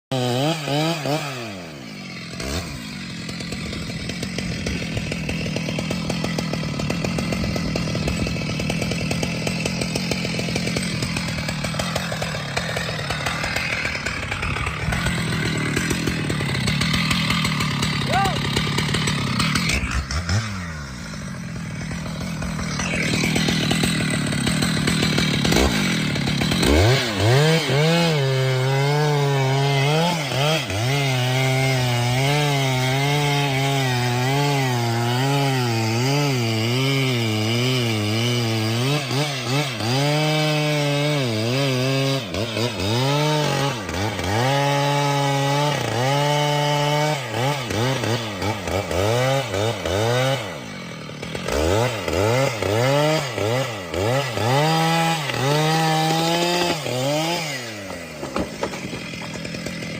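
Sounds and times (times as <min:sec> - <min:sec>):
chainsaw cutting wood: 0:00.0 - 0:59.9.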